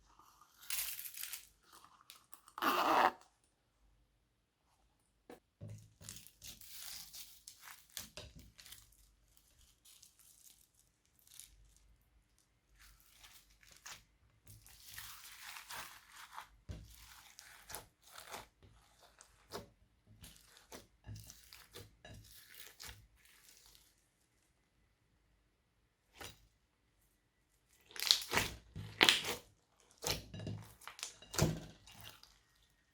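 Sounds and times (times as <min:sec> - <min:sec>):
slime crackling and popping: 0:27.8 - 0:29.4.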